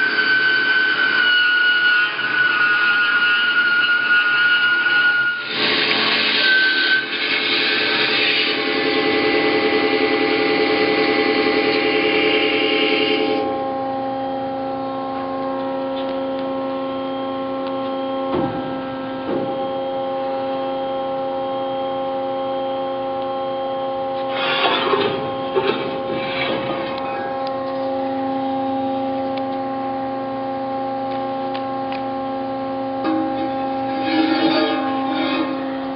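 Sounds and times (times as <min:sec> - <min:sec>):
bandsaw motor humming: 0:00.0 - 0:20.5, 0:23.1 - 0:35.9
bandsaw blade rasping: 0:02.1 - 0:08.9, 0:24.3 - 0:25.1, 0:33.0 - 0:35.9.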